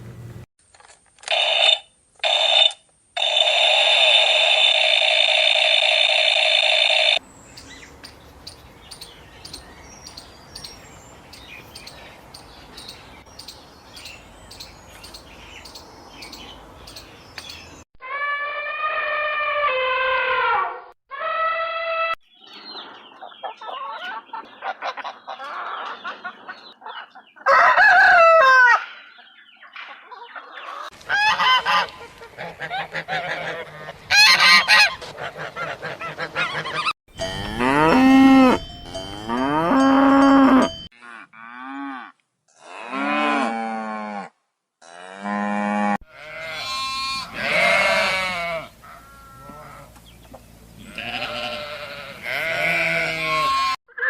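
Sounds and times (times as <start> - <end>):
fowl honking: 31.1 - 39.4
cattle lowing: 37.2 - 40.8.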